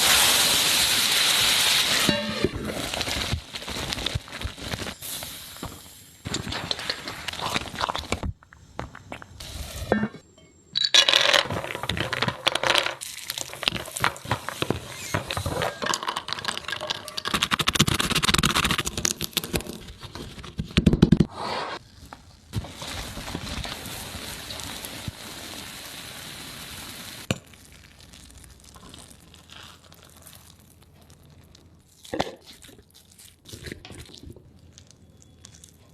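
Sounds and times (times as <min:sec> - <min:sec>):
steady hiss: 0:22.9 - 0:27.3
close-miked eating noises: 0:27.5 - 0:35.9.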